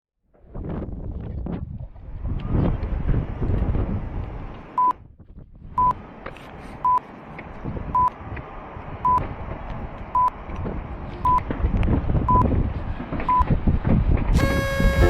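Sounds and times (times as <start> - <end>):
short beeps: 9.0 - 9.2, 12.3 - 12.5, 14.4 - 15.0.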